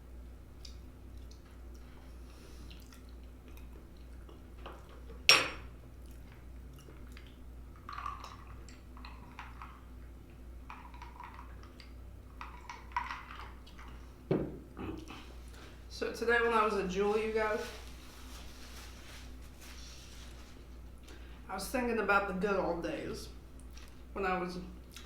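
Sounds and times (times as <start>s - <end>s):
soft chewing and mouth sounds: 0.5s - 5.2s, 5.8s - 15.8s, 23.5s - 24.1s, 24.8s - 25.0s.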